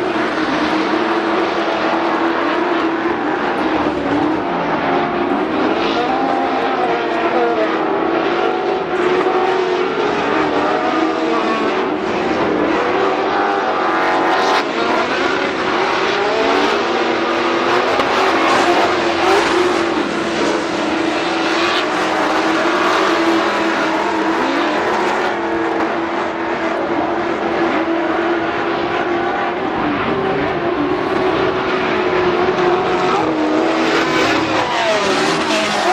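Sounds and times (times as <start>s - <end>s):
race vehicle engines revving: 0.0s - 35.9s.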